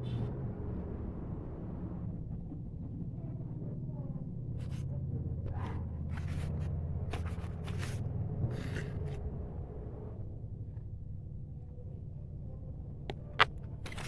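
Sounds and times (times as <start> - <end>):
steady low hum: 0.0 - 14.0
short scratching strokes: 6.1 - 9.2.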